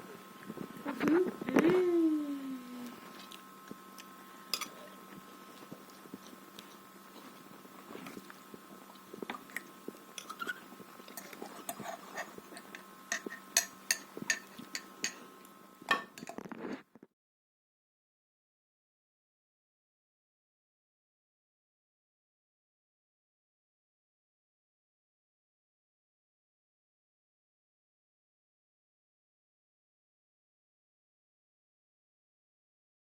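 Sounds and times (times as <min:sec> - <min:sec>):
faint steady hum: 0:00.0 - 0:17.1
forks clicking on plates: 0:11.1 - 0:15.2, 0:15.9 - 0:16.4.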